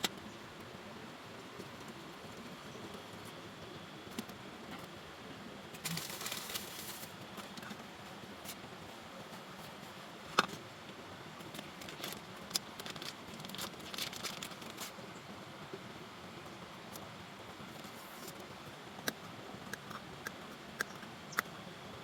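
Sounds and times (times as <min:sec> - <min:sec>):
rustling and crackling: 0:05.8 - 0:10.6, 0:11.4 - 0:15.0.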